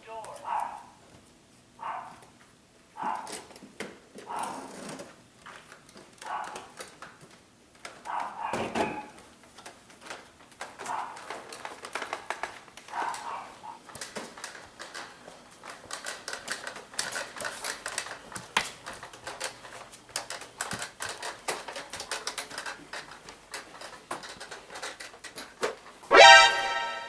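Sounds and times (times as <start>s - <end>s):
rapid irregular clicking: 9.4s - 26.0s.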